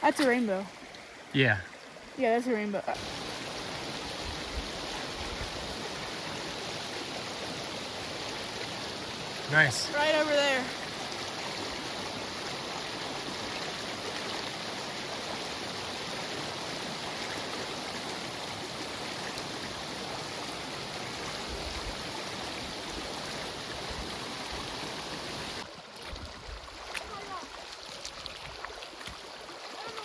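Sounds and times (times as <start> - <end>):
stream water rushing over rapids: 0.0 - 30.0.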